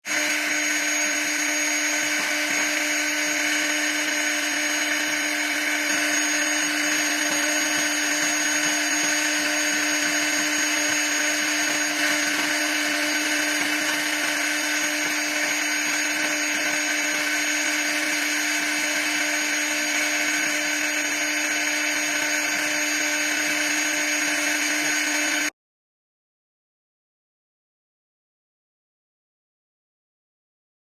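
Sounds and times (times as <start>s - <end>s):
router spindle whining: 0.0s - 25.5s.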